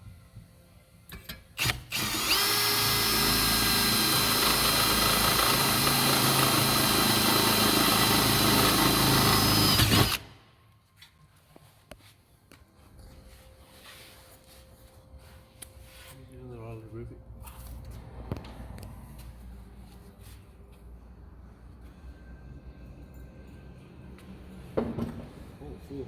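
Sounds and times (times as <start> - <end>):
power drill whining: 1.6 - 10.3.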